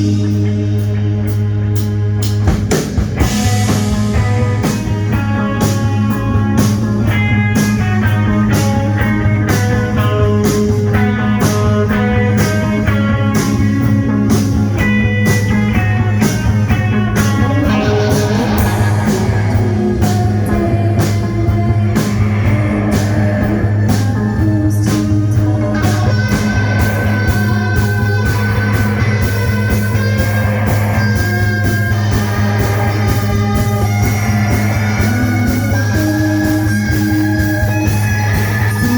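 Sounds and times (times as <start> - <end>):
droning bass note: 0.0 - 38.9
guitar melody: 0.0 - 38.9
drum beat: 13.6 - 38.9.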